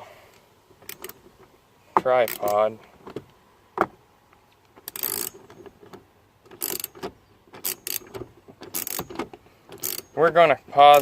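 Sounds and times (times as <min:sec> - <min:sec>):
hand ratchet clicking: 0:00.8 - 0:01.2, 0:02.2 - 0:02.6, 0:04.8 - 0:05.7, 0:06.5 - 0:11.0.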